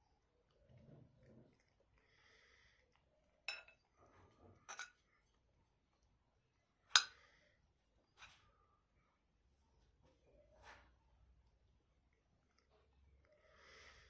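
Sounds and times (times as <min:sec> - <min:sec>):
cutlery clinking against dishes: 0:03.5 - 0:03.8, 0:04.6 - 0:05.0, 0:06.9 - 0:07.2.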